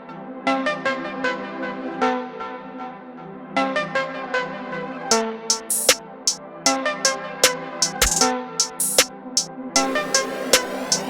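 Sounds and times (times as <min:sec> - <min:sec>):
hi-hat strikes: 0:05.5 - 0:11.0.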